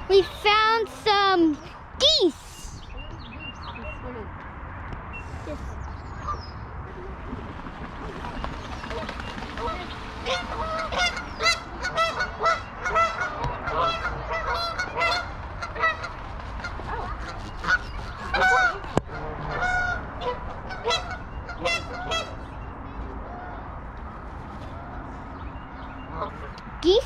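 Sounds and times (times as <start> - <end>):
geese honking: 8.0 - 22.5.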